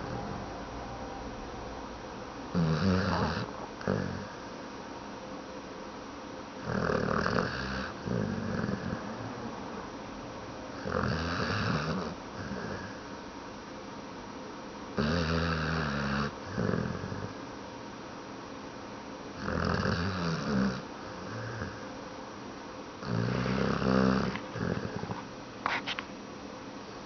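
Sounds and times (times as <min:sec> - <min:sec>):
person snoring: 0:02.5 - 0:04.4, 0:06.6 - 0:09.3, 0:10.8 - 0:13.0, 0:19.4 - 0:21.8, 0:23.0 - 0:25.2.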